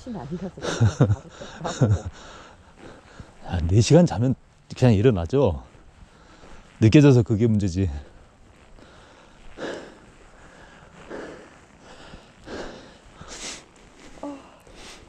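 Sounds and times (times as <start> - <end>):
person breathing heavily: 1.3 - 3.5, 8.8 - 15.0.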